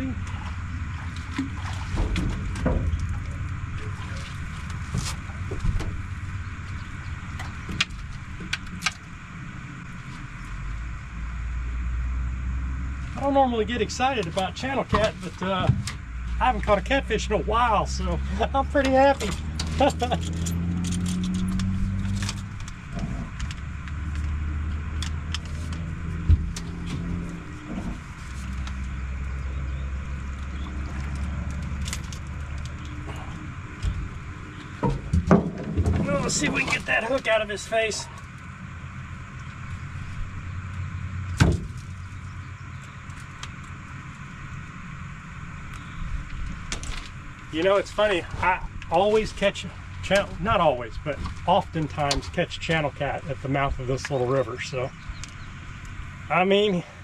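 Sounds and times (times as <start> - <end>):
low motor hum: 0.0 - 57.0
steady low rumble: 0.0 - 57.0.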